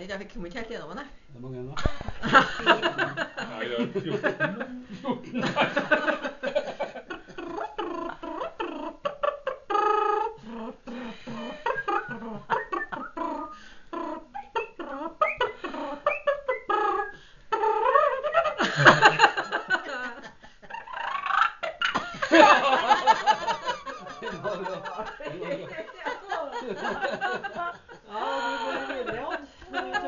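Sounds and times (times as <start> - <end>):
laughter: 1.8 - 9.7, 11.1 - 17.1, 17.8 - 30.0.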